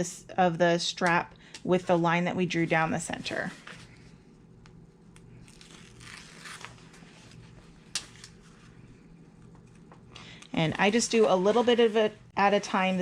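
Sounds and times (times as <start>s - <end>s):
strap rustling and crinkling: 5.1s - 12.1s.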